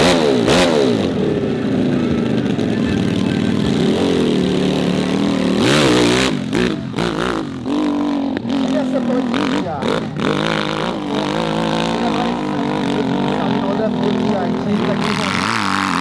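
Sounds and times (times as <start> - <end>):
motorcycle engines revving: 0.0 - 16.0.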